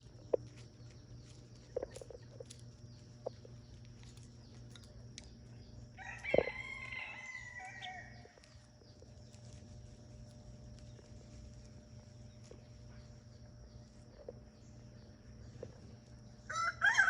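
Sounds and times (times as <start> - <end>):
rooster crowing: 5.9 - 8.4, 16.4 - 17.0.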